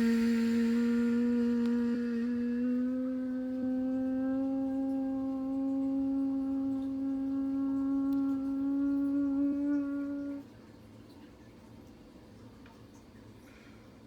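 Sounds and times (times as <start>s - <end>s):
person humming a long note: 0.0s - 10.6s.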